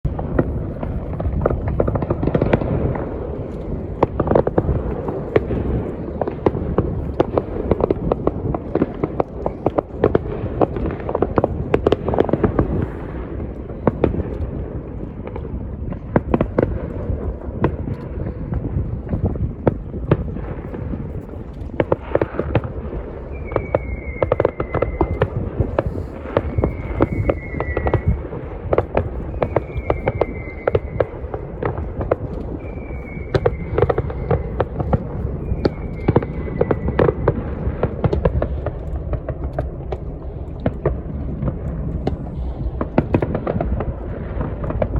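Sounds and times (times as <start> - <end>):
fireworks bangs and crackles: 0.0 - 44.9
low rumble: 0.0 - 44.9
falling whistle-like tone: 23.3 - 25.2, 26.5 - 28.2, 29.3 - 31.1, 32.6 - 34.6, 35.4 - 37.1.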